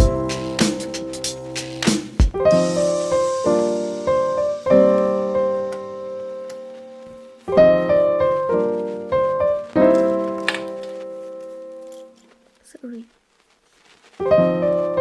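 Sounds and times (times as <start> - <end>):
slow piano chords: 0.0 - 1.6, 2.3 - 12.2, 14.2 - 15.0.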